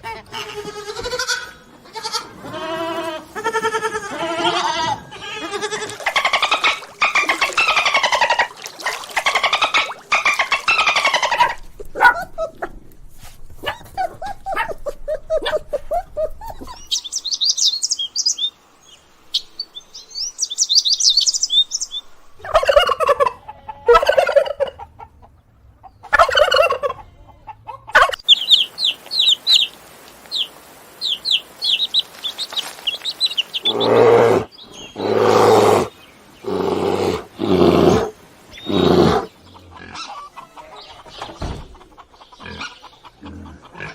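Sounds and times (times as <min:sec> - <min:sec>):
pitched animal calls: 0:00.0 - 0:12.8, 0:31.7 - 0:41.1
low animal call: 0:33.6 - 0:40.7.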